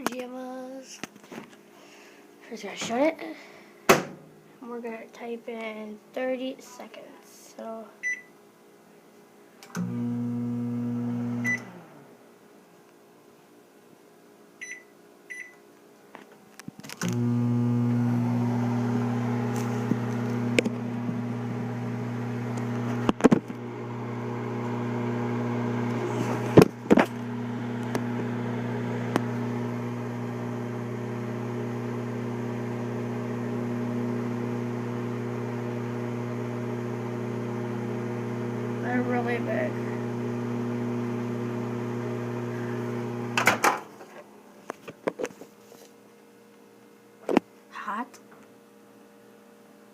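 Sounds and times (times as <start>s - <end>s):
microwave oven humming: 9.7s - 12.4s, 17.0s - 43.8s
microwave keypad beeping: 14.6s - 15.6s.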